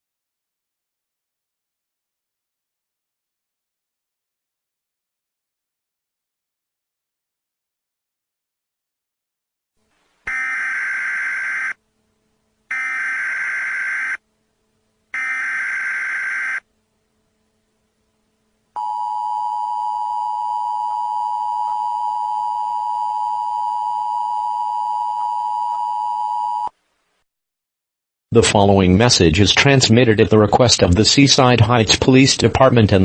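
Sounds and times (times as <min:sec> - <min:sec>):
screechy digital data tones: 0:10.3 - 0:11.8, 0:12.7 - 0:14.2, 0:15.2 - 0:16.6.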